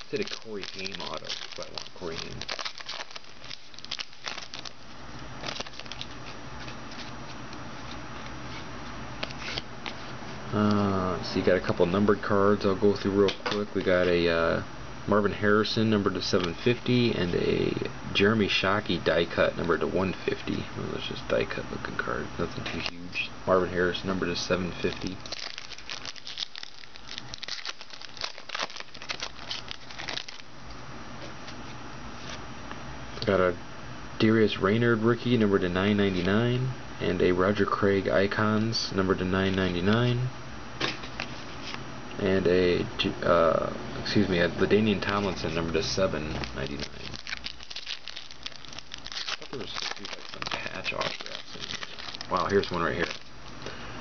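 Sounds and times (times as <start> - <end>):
trading cards rustling: 0.0 - 10.0, 24.6 - 30.5, 45.0 - 53.7
low steady hum: 0.0 - 54.0.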